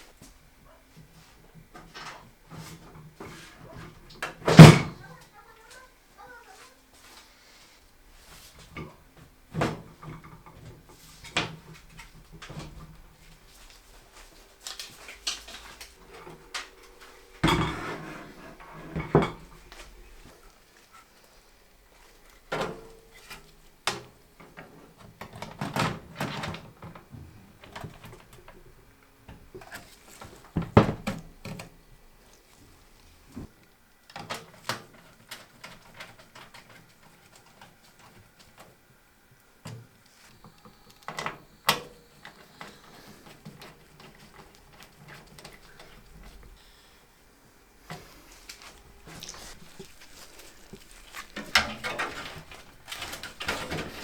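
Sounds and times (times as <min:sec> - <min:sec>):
computer parts clicking and knocking: 0:50.8 - 0:54.0.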